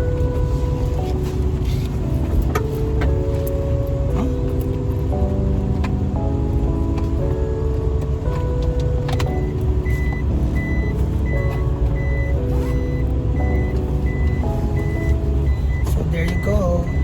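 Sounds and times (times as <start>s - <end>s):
background music: 0.0s - 17.0s
car cabin rumble: 0.0s - 17.0s
parking sensor beeps: 8.8s - 17.0s.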